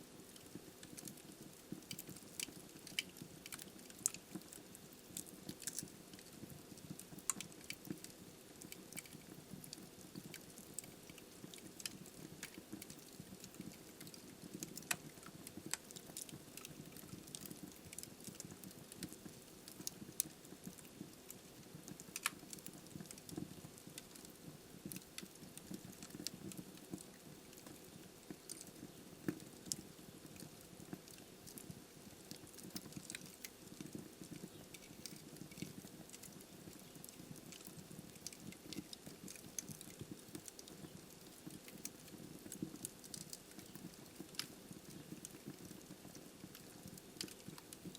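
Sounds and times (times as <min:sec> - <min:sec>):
burning logs crackling and popping: 0:00.0 - 0:47.9.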